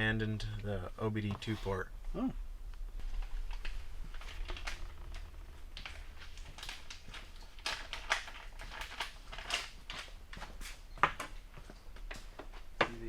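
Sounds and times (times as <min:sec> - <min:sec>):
low steady hum: 0:00.0 - 0:13.0
clicking and rustling of small parts: 0:03.0 - 0:12.3.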